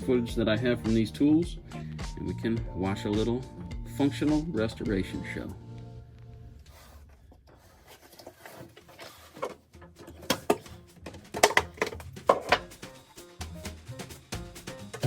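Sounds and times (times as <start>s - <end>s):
hand tools knocking on workbench: 10.0s - 12.8s.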